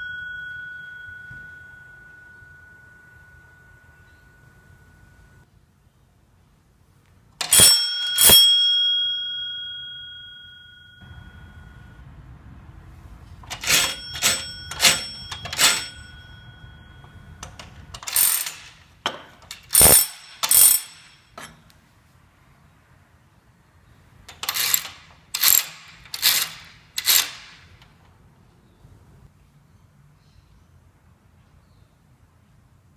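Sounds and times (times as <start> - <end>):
doorbell ringing: 0.0 - 5.4, 7.4 - 12.3, 13.4 - 18.5.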